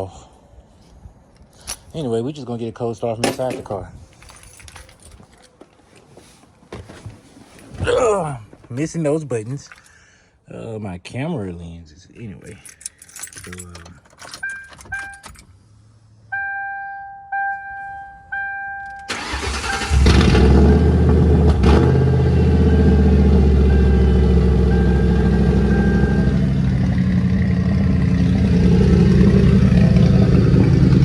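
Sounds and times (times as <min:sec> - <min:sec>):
dashboard warning chime: 0:14.3 - 0:15.4, 0:16.3 - 0:20.0, 0:22.3 - 0:26.9
car engine cranking and idling: 0:19.0 - 0:31.0.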